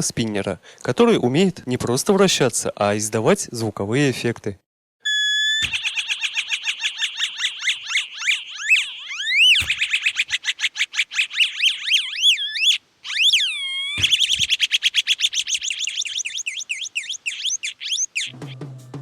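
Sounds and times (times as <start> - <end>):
electronic chirping tones: 5.0 - 10.5, 11.1 - 18.5
pulsing electronic beeps: 5.1 - 10.3, 11.3 - 14.4.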